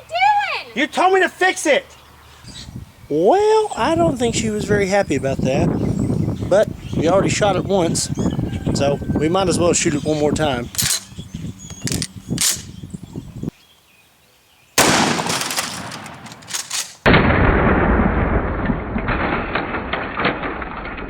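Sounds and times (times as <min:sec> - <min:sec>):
shotgun blast: 0:14.8 - 0:20.8.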